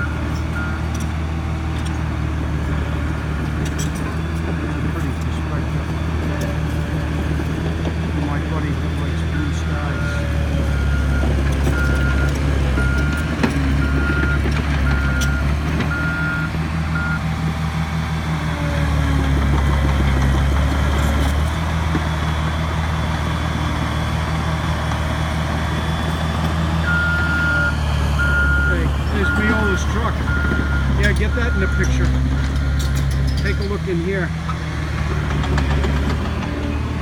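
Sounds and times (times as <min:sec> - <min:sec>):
heavy machine engine running: 0:00.0 - 0:37.0
reversing alarm beeping: 0:08.9 - 0:17.2, 0:26.8 - 0:33.8.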